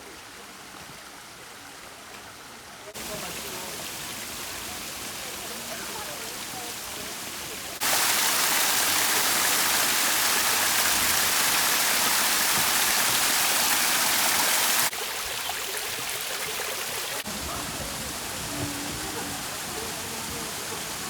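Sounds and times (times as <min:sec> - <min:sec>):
waterfall water rushing: 0:00.0 - 0:21.0.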